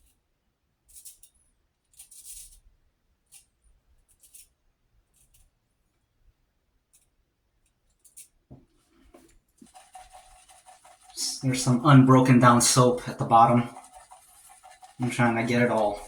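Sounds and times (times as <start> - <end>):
shaving brush swishing lather: 9.6 - 16.0.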